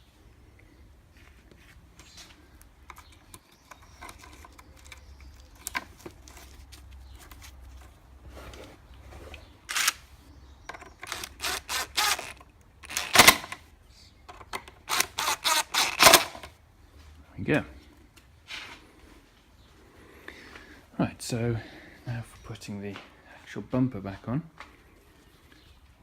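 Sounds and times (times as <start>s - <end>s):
hand tool clicking: 10.7s - 13.6s, 14.3s - 16.5s.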